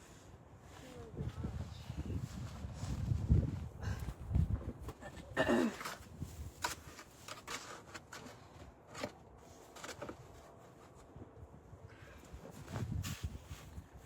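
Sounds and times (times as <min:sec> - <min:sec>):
snow scraping and crunching: 0:12.5 - 0:14.0.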